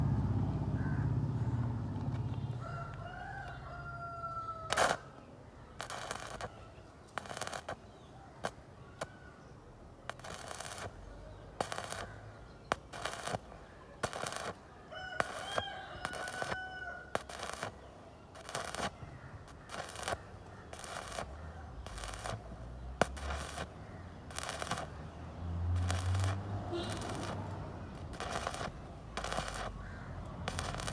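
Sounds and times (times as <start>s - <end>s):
low hum: 0.0s - 2.6s
rooster crowing: 2.5s - 5.1s, 14.1s - 17.7s
arc welder crackling: 4.3s - 30.9s.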